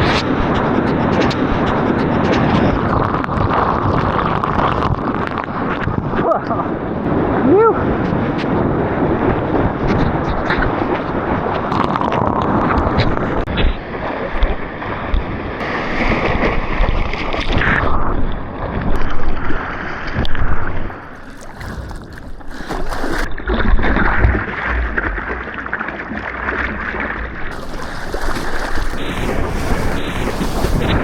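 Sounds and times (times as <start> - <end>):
ocean water rushing and splashing: 20.9 - 23.3, 27.5 - 31.0
wind buffeting microphone: 27.5 - 31.0.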